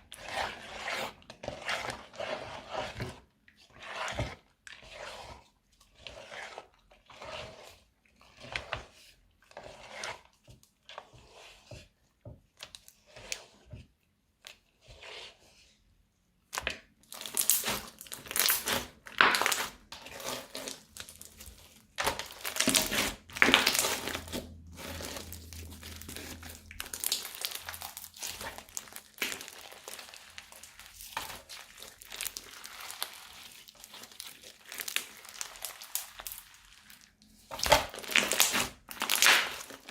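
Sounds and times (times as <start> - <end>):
slime and plastic crinkling: 16.5 - 39.9.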